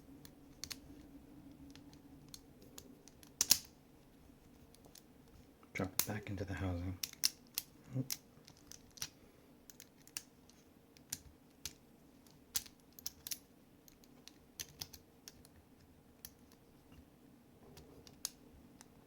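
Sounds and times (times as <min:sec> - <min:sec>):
small metal parts clicking: 0:01.7 - 0:03.7, 0:07.0 - 0:15.5.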